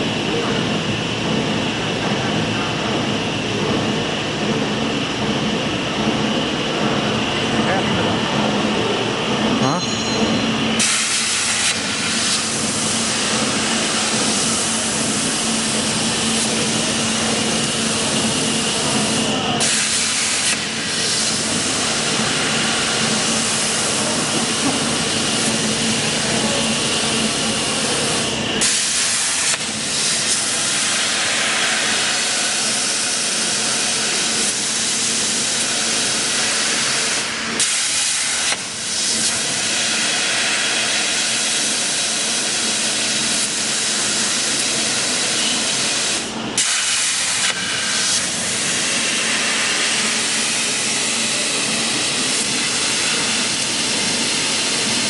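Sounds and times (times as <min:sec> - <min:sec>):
plasma torch hissing: 0:10.8 - 0:15.4, 0:18.8 - 0:22.1, 0:28.0 - 0:54.3.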